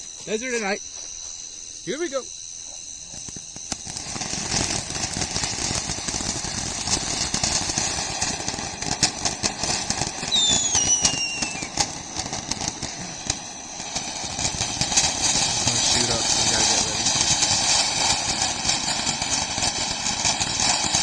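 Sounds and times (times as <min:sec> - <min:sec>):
firework fountain hissing and crackling: 0:00.0 - 0:21.0
falling whistle: 0:10.2 - 0:12.0.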